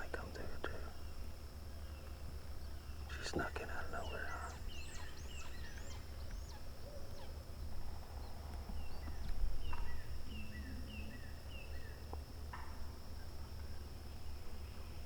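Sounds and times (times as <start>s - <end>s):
bird chirping: 1.8s - 7.4s.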